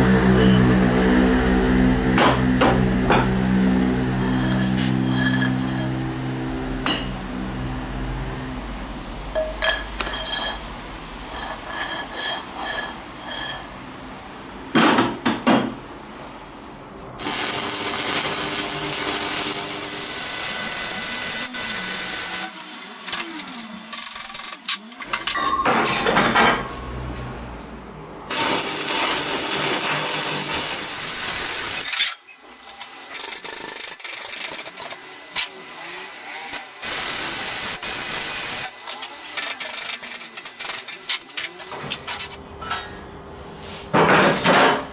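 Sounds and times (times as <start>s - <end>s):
power tools running: 17.2s - 25.2s, 28.3s - 31.8s, 32.6s - 39.4s.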